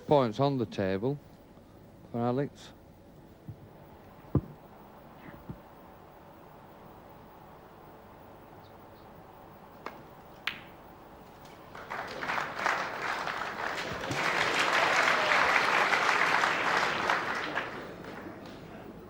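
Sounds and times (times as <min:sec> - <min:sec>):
audience applause: 0:11.6 - 0:19.0.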